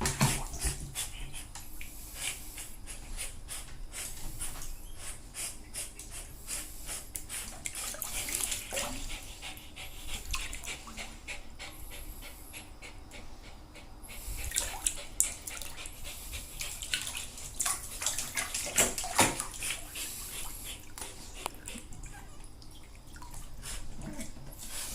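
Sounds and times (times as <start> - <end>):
dog splashing in bathwater: 0.0 - 1.0, 7.4 - 9.2, 16.5 - 24.6.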